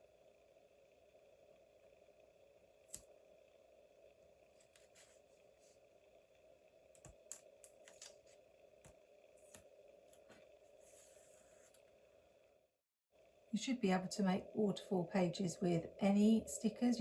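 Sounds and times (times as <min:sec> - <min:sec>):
low room tone hum: 0:00.0 - 0:17.0.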